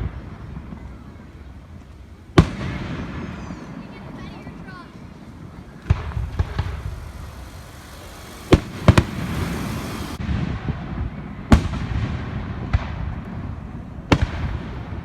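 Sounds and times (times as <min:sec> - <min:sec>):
fireworks rumbling and crackle: 0:00.0 - 0:15.0
fireworks bangs: 0:02.4 - 0:13.1.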